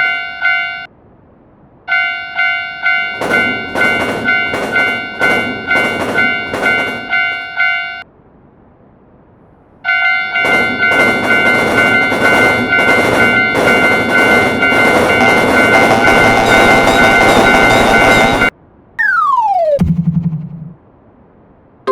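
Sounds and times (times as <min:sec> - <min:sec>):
railroad crossing bell ringing: 0:00.0 - 0:00.9, 0:01.9 - 0:08.0, 0:09.8 - 0:18.5
rough pulsing noise: 0:19.0 - 0:20.8.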